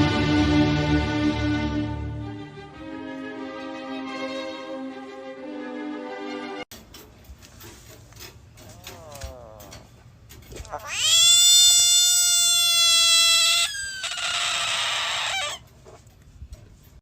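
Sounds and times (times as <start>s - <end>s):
cat yowling: 10.6s - 15.6s.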